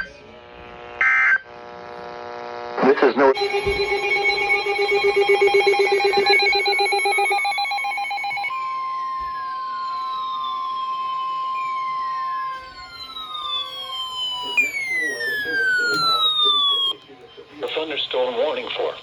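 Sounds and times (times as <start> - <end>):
tones sweeping down: 3.4 - 16.9
warbling electronic alert tone: 3.4 - 16.9
steady high alert tone: 3.4 - 17.0.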